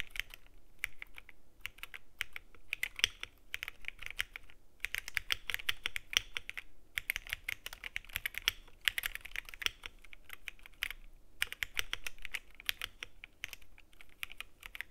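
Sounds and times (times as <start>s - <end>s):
mechanical keyboard typing: 0.0s - 14.9s.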